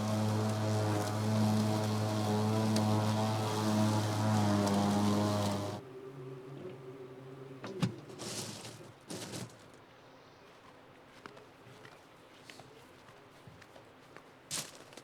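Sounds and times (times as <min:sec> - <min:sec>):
faint lawn mower hum: 0:00.0 - 0:09.4.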